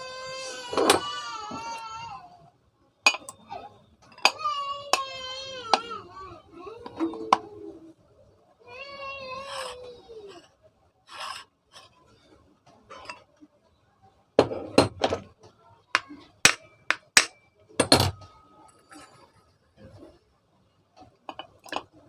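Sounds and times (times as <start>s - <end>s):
tools knocking and clinking on metal: 3.1s - 3.4s, 14.4s - 15.3s, 16.0s - 18.3s, 21.3s - 22.0s
soft rubbing: 11.1s - 12.2s.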